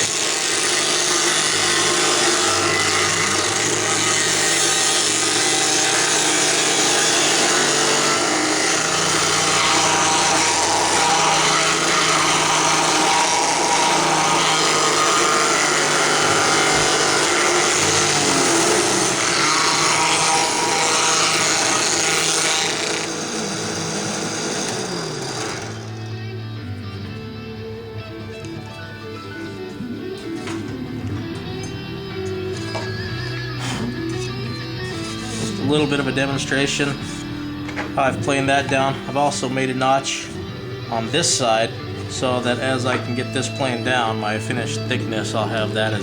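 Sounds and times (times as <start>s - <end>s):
drill press motor running: 0.0s - 26.2s
planer cutting wood: 0.0s - 26.3s, 29.2s - 46.0s.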